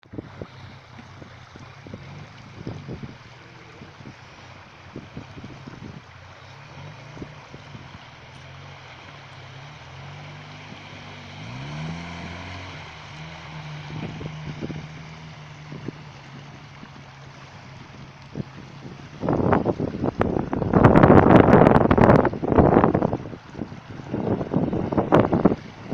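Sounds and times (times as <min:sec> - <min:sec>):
car engine running under load: 0:00.0 - 0:25.9
water rushing and sloshing: 0:00.0 - 0:25.9.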